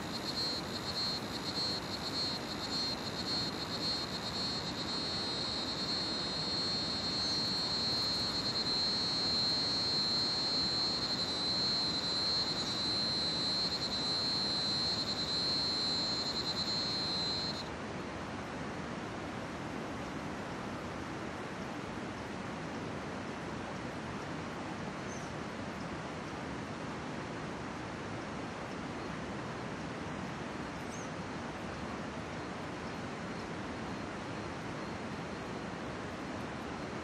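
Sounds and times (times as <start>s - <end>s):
crickets trilling: 0.0s - 17.7s.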